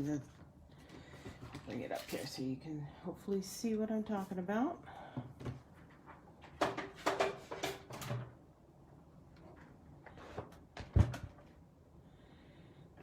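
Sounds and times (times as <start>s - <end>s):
tools knocking and scraping on table: 6.5s - 8.2s.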